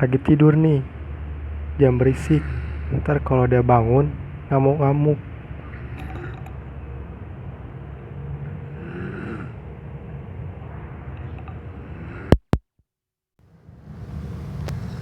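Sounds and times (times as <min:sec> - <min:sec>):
low steady snoring: 0:08.6 - 0:09.8, 0:11.8 - 0:12.4.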